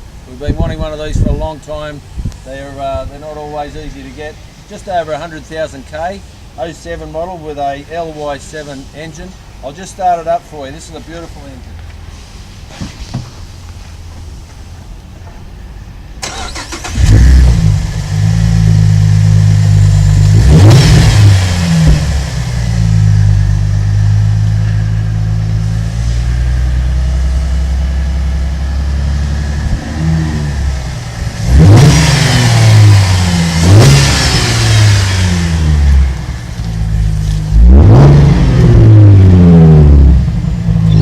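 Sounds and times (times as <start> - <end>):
car engine starting and revving: 16.2 - 41.0.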